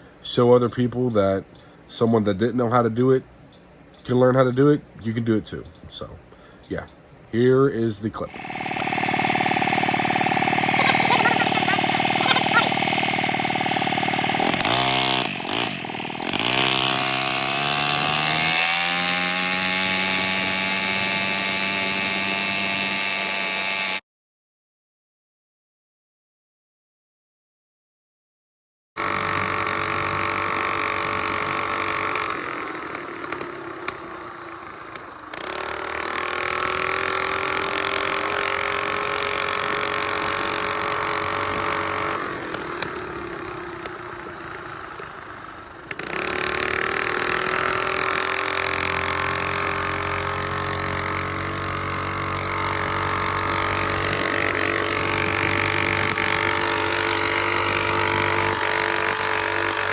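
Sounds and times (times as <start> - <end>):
mini bike engine revving: 8.2 - 24.0, 29.0 - 59.9.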